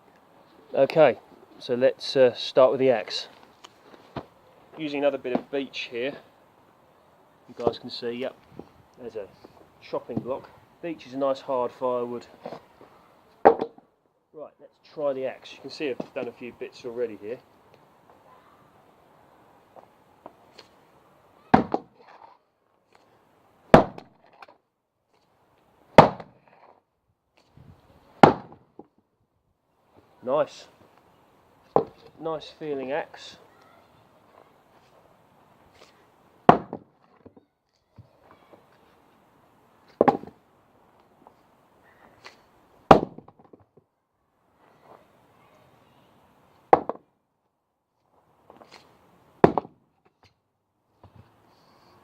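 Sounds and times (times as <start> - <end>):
axe chopping into a log: 21.5 - 21.9, 23.7 - 24.1, 26.0 - 26.4, 28.2 - 28.6, 36.5 - 36.9, 42.9 - 43.4, 46.7 - 47.0, 49.4 - 49.8.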